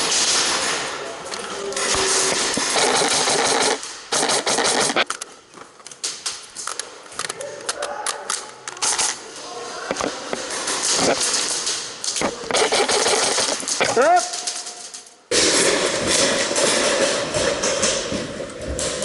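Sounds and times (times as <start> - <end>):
airsoft guns firing: 0.0 - 1.0, 1.8 - 5.1, 12.4 - 14.7.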